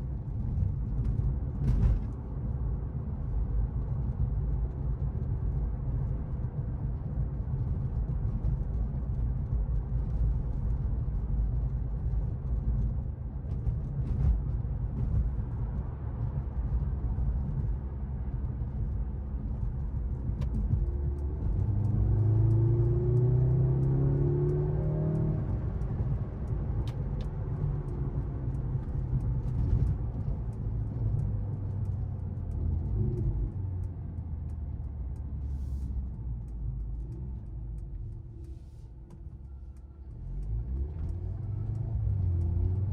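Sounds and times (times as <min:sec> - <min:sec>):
road rumble: 0:00.0 - 0:42.9
car engine cruising: 0:12.5 - 0:42.9.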